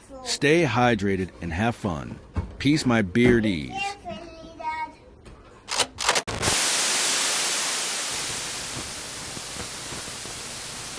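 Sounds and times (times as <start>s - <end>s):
sharp crackles: 5.7s - 10.9s
static hiss: 6.3s - 10.9s.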